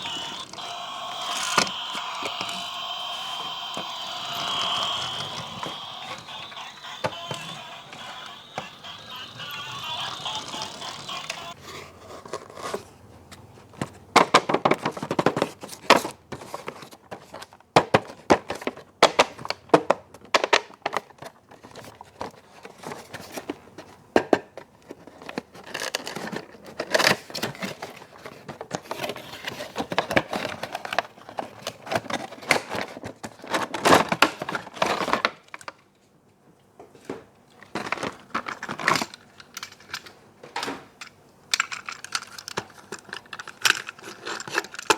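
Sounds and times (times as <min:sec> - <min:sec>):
plastic and cardboard crinkling: 0:24.6 - 0:35.8, 0:41.7 - 0:44.9
packaging clicks and rustles: 0:24.8 - 0:35.8, 0:37.6 - 0:40.2, 0:41.6 - 0:44.9.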